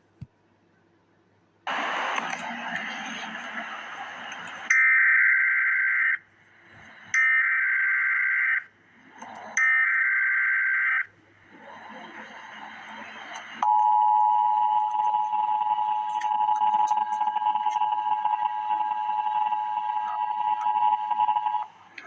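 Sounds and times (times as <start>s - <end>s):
rushing noise: 1.7s - 4.7s
digital data tones: 9.3s - 21.8s.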